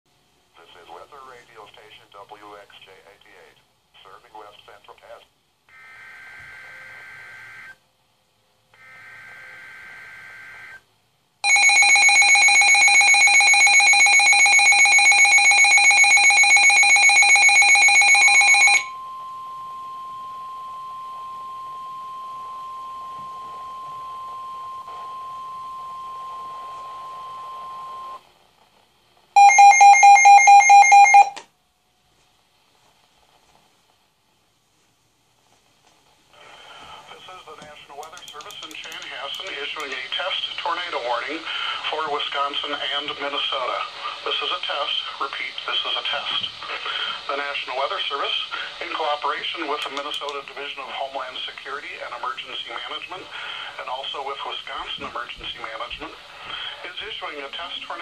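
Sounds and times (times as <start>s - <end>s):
two-tone data bursts: 14.9s - 28.2s.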